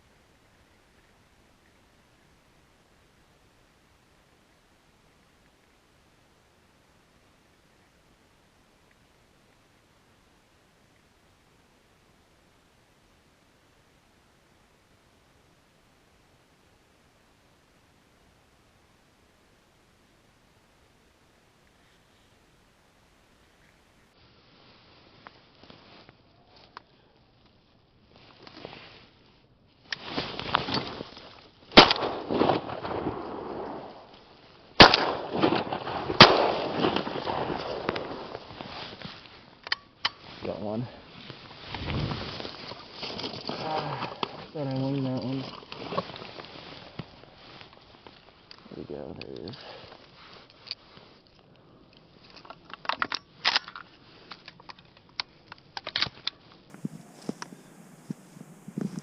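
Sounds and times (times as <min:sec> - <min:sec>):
handling crackles and clicks: 0:29.9 - 0:40.4, 0:41.3 - 0:59.0
shotgun blasts with echo: 0:31.8 - 0:34.0, 0:34.8 - 0:38.3.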